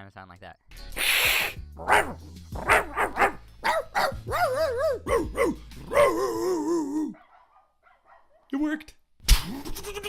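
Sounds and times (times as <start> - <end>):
man imitating dog yips and barks: 1.8 - 8.6
man imitating dog whines: 4.0 - 7.2.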